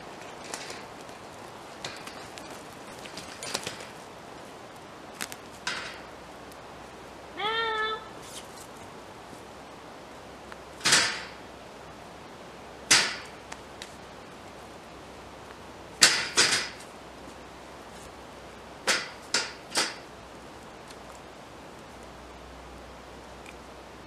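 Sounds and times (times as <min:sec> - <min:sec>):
sharp impacts: 0:10.8 - 0:11.4, 0:12.9 - 0:13.4.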